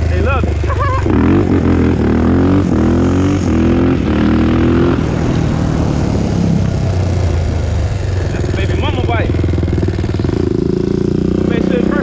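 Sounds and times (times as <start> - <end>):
engine accelerating through gears: 0.0 - 12.0.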